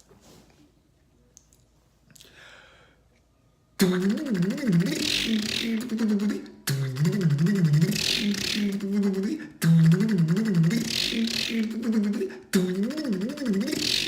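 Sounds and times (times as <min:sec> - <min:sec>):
man imitating car engine cranking: 0:03.8 - 0:14.0.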